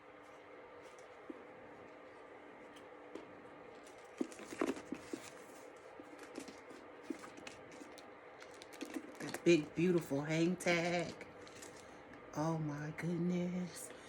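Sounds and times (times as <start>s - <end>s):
packing paper rustling: 0.1s - 10.0s, 11.0s - 12.0s.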